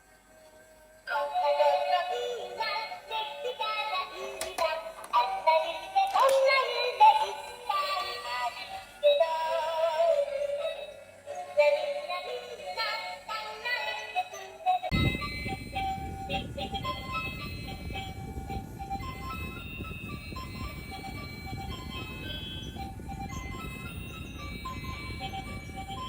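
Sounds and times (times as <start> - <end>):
synthesized singing voice: 1.1 - 15.2.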